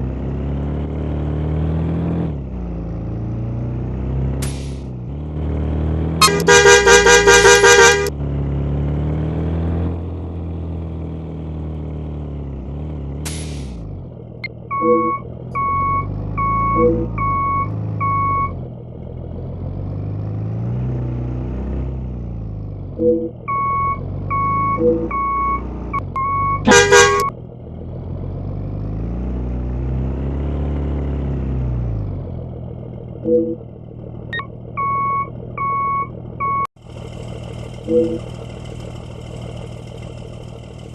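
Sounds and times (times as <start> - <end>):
diesel bus engine running: 0.0 - 40.9
pulsing multi-tone bus horn: 6.2 - 8.2, 14.7 - 18.5, 23.5 - 27.3
short repeated beeps: 14.7 - 18.5, 23.0 - 27.3, 34.3 - 36.7.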